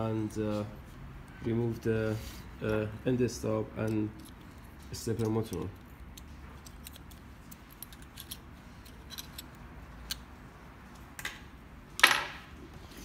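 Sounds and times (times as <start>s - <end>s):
light clicks of small parts: 3.8s - 10.3s.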